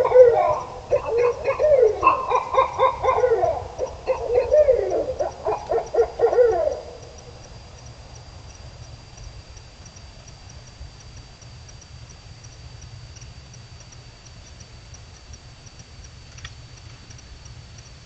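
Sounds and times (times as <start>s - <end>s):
wavering animal calls: 0.0s - 7.5s
faint high-pitched ticking: 0.0s - 18.0s.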